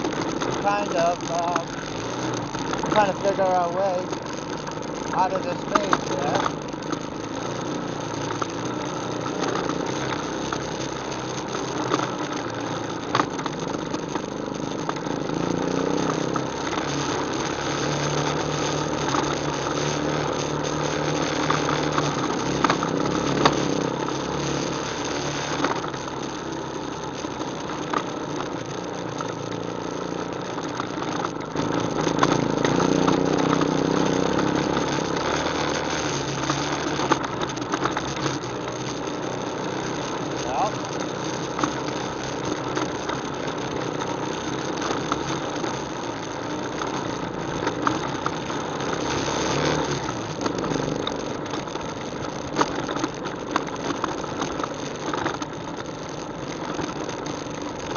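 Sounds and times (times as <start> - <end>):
atv engine running: 0.0 - 57.9.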